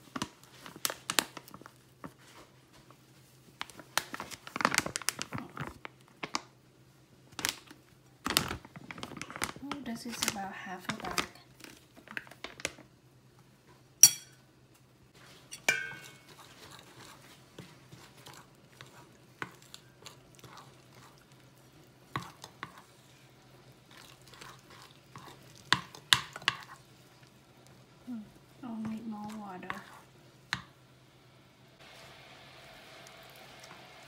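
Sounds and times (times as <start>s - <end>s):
batter stirring: 15.2s - 30.8s
utensil clinking against bowl: 15.6s - 16.5s.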